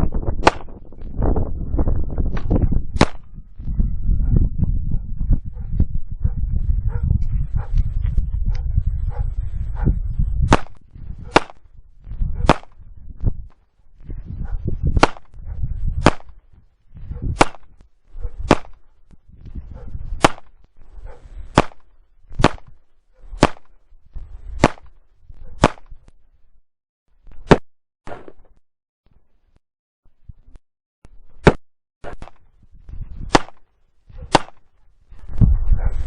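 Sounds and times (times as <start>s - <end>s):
low rumble: 0.0s - 16.0s
sharp cracks: 0.2s - 0.9s, 2.3s - 3.3s, 10.5s - 11.7s, 12.4s - 12.8s, 15.0s - 15.4s, 16.0s - 16.4s, 17.4s - 18.8s, 20.2s - 20.6s, 21.5s - 22.8s, 23.4s - 23.8s, 24.6s - 25.0s, 25.6s - 26.0s, 31.4s - 32.5s, 33.3s - 33.7s, 34.3s - 34.7s.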